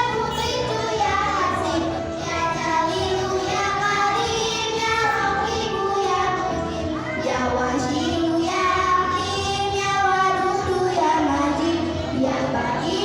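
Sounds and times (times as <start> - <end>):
children singing: 0.0 - 13.0
musical accompaniment: 0.0 - 13.0.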